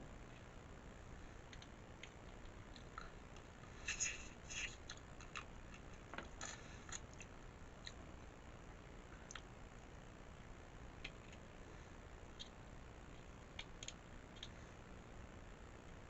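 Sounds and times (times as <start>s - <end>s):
mouth clicks and chewing: 1.5s - 8.0s.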